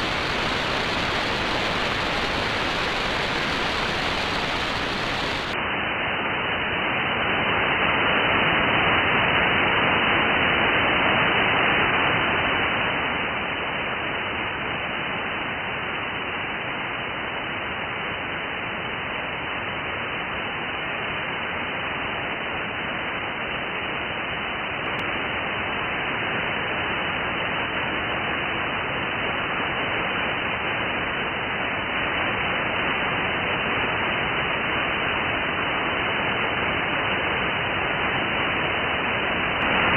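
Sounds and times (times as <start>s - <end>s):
radio static hiss: 0.0s - 5.6s, 39.4s - 39.9s.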